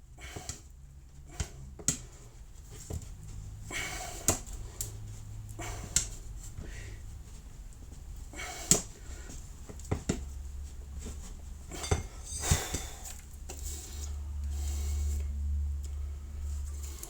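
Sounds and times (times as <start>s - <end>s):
low steady hum: 0.0s - 17.0s
metal clinks and knocks: 11.0s - 13.3s.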